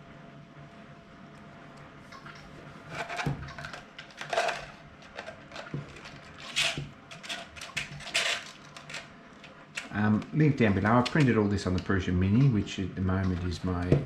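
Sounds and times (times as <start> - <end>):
plastic parts clicking and clattering: 2.9 - 11.9.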